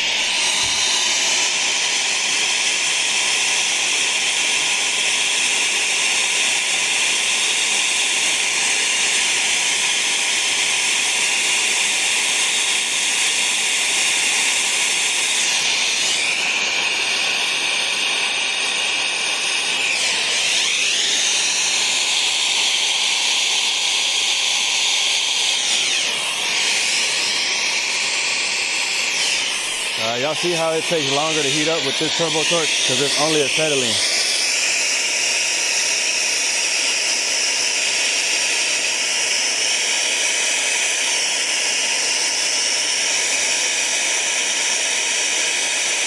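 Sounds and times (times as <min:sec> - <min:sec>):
torch flame hissing: 0:00.0 - 0:38.2.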